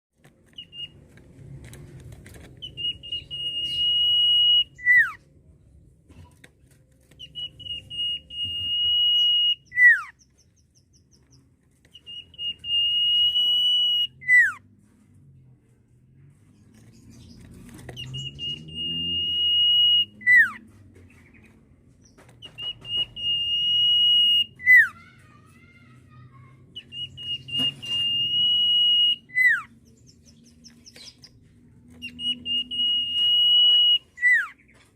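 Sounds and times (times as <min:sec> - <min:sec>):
bird whistling song: 0:00.5 - 0:01.1, 0:02.6 - 0:05.2, 0:07.1 - 0:14.6, 0:16.9 - 0:20.6, 0:22.0 - 0:25.0, 0:26.8 - 0:31.4, 0:32.0 - 0:34.9.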